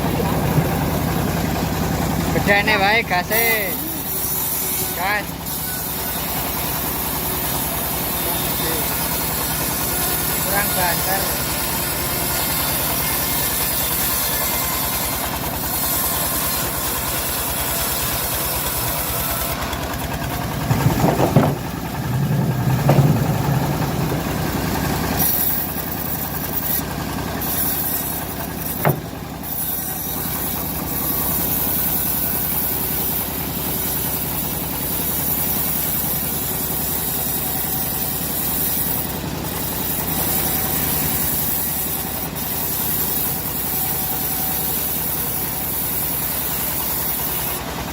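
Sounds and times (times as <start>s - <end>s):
bandsaw mill sawing wood: 0.0s - 47.9s
sharp knock: 28.8s - 29.2s.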